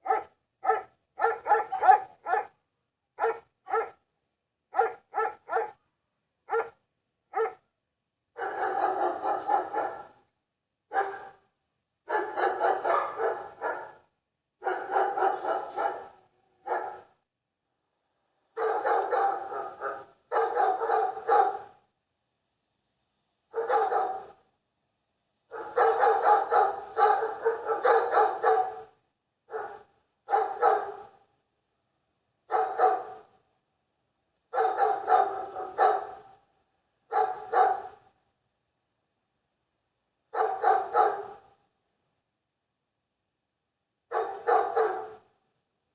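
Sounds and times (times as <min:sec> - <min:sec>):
dogs barking: 0:00.0 - 0:02.6, 0:03.2 - 0:04.0, 0:04.7 - 0:05.8, 0:06.5 - 0:07.6, 0:08.4 - 0:10.2, 0:10.9 - 0:11.4, 0:12.1 - 0:14.0, 0:14.6 - 0:17.1, 0:18.6 - 0:21.8, 0:23.6 - 0:24.4, 0:25.5 - 0:31.2, 0:32.5 - 0:33.3, 0:34.6 - 0:36.4, 0:37.1 - 0:38.0, 0:40.4 - 0:41.4, 0:44.1 - 0:45.2.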